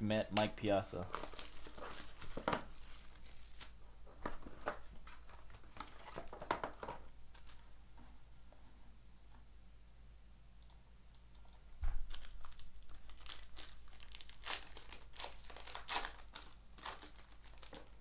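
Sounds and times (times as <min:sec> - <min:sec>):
card pack wrapper crinkling and tearing: 0:01.0 - 0:07.6, 0:12.0 - 0:18.0.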